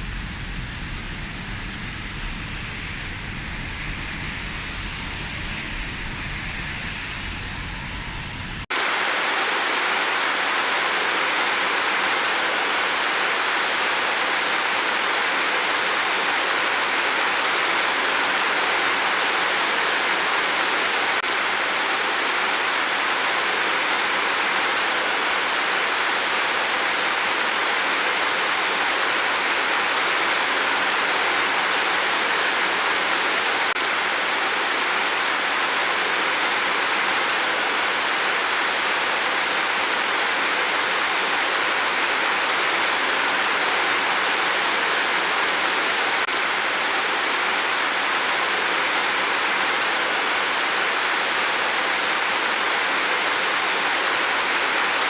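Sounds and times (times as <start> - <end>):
steady rain hiss: 0.0 - 55.0.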